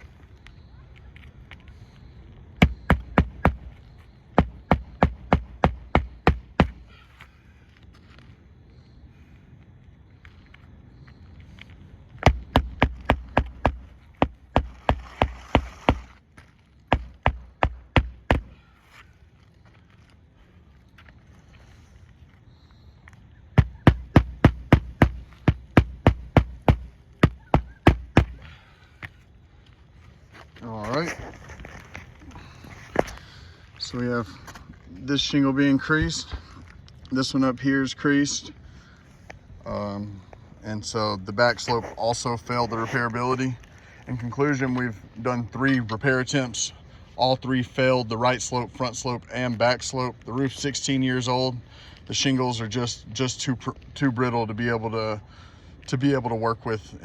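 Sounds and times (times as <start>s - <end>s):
hammer driving nails into shingles: 4.4s - 6.8s, 12.2s - 16.2s, 16.9s - 18.5s, 23.6s - 28.5s.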